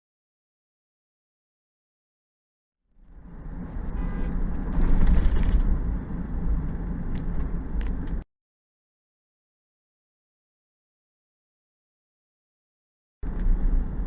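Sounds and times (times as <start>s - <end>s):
vehicle road noise rumble: 2.9s - 8.2s, 13.2s - 14.0s.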